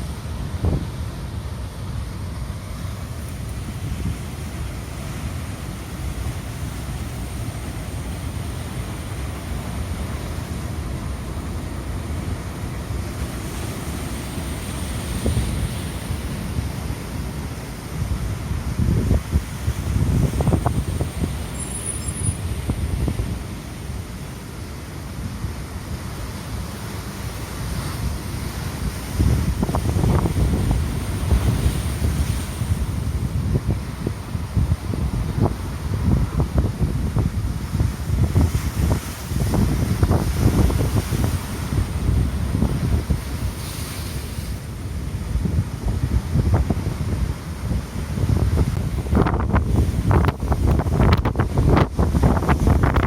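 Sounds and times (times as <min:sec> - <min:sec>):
rough sea surf: 0:00.0 - 0:53.0
wave wash hissing: 0:00.0 - 0:53.0
wind buffeting microphone: 0:17.9 - 0:21.6, 0:27.7 - 0:44.2, 0:44.8 - 0:53.0.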